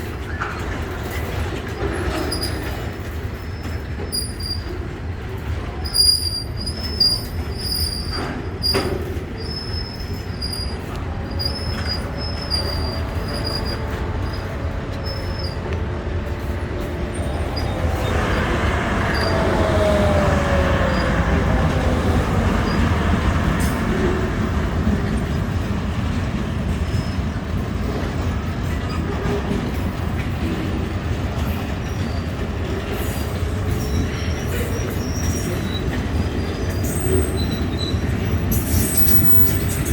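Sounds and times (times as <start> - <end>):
wheel squeal: 0.0 - 4.8, 5.7 - 24.1, 31.8 - 39.9
train wheels rumbling on rail: 0.0 - 39.9.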